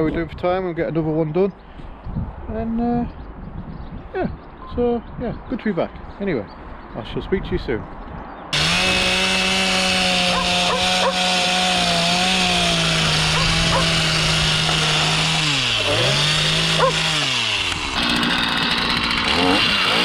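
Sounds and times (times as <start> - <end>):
chainsaw cutting wood: 8.5 - 20.0.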